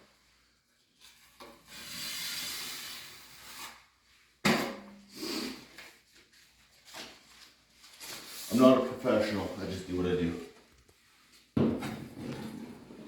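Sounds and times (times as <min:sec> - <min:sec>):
drywall knife scraping compound: 0:00.8 - 0:04.1, 0:11.7 - 0:13.0.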